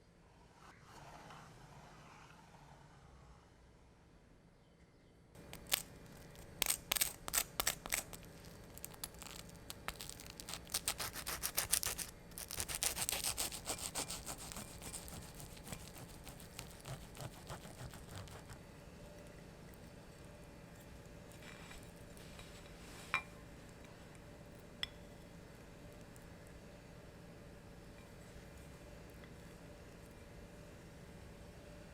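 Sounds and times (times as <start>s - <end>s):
knife sawing through toast: 6.6s - 18.6s.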